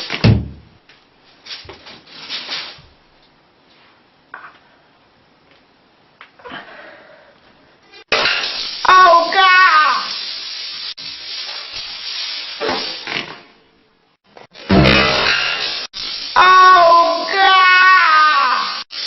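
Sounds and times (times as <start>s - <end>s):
loud thump: 0.2s - 0.7s, 14.7s - 15.5s.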